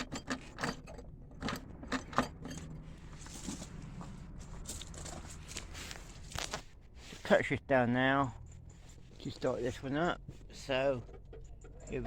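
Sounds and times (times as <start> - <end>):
soft rustling: 2.9 - 7.4.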